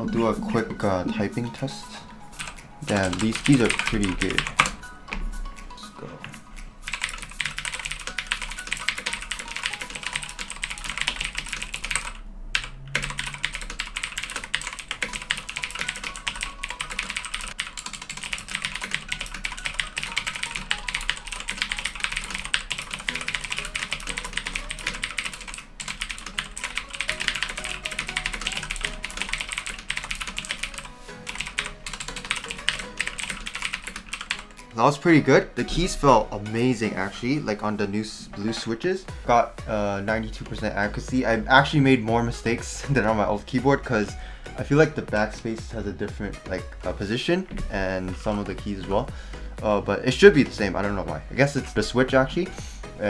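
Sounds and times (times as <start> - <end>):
mechanical keyboard typing: 2.4 - 4.8, 6.8 - 34.5.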